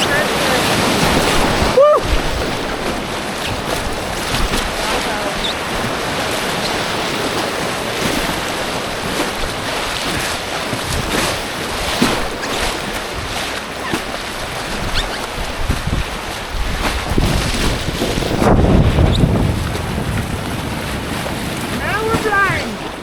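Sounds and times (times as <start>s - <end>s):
water splashing against kayak: 0.0s - 23.0s
whitewater rushing: 18.6s - 23.0s.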